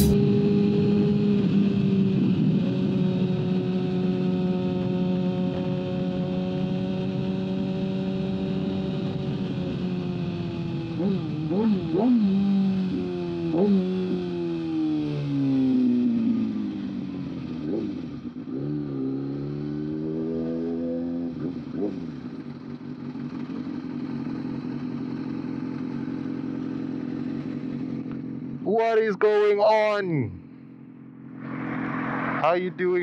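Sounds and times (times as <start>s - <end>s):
motorcycle engine revving: 0.0s - 28.9s, 29.8s - 33.0s
motorcycle engine idling: 21.5s - 28.9s, 29.8s - 31.4s.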